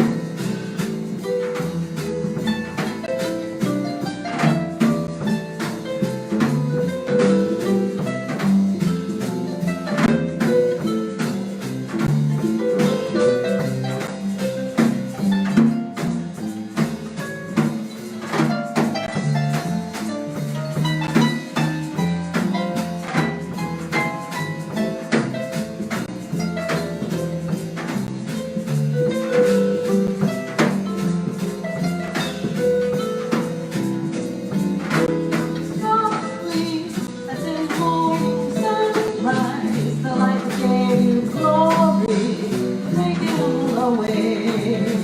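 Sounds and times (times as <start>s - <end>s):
bass: 0.0s - 45.0s
percussion keeping time: 0.0s - 45.0s
plucked harp notes: 0.0s - 45.0s.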